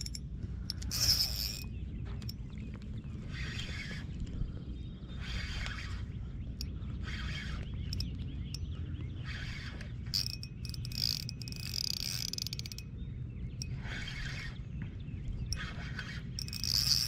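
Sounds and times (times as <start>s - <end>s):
rapid mechanical clicking: 0.0s - 1.6s, 9.3s - 12.9s, 15.6s - 17.0s
steady low rumble: 0.0s - 11.6s, 12.5s - 16.4s
crickets chirping: 10.2s - 12.8s.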